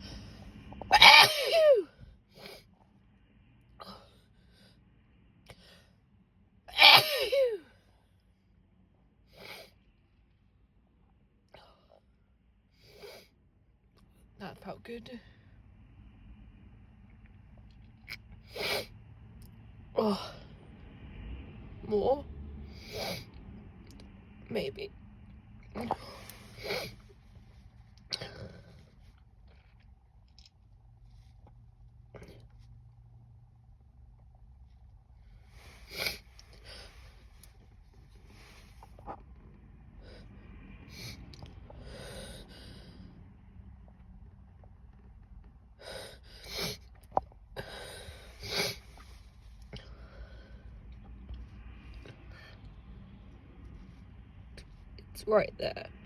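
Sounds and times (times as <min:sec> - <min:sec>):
woman sneezing: 0:00.9 - 0:01.9, 0:06.7 - 0:07.6.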